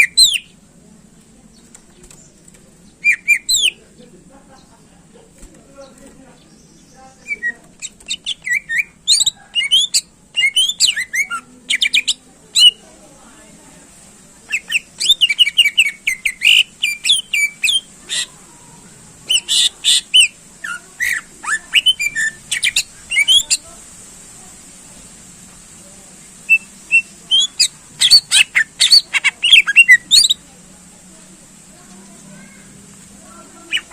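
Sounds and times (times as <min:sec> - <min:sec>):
bird singing whistled notes: 0:00.0 - 0:00.5, 0:03.0 - 0:03.8, 0:07.2 - 0:12.8, 0:14.5 - 0:17.9, 0:19.3 - 0:23.6, 0:26.5 - 0:30.4.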